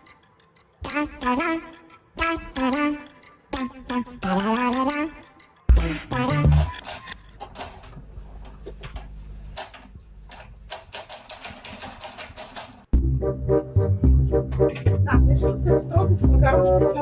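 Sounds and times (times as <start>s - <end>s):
rapid irregular clicking: 0.0s - 12.9s
music with a beat: 0.8s - 6.8s.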